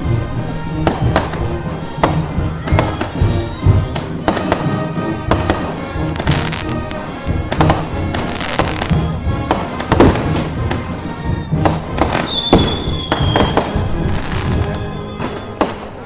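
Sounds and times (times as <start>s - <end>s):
festival music: 0.0s - 16.0s
firecrackers banging: 0.5s - 16.0s
short high whistle: 12.3s - 13.6s, 14.6s - 15.6s.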